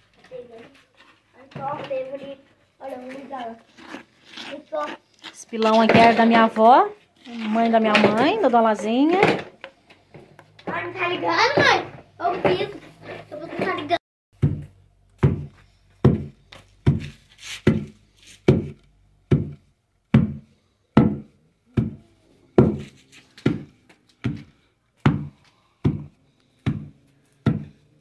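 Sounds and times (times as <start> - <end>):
pestle pounding in wooden mortar: 14.4 - 22.0, 22.6 - 27.8.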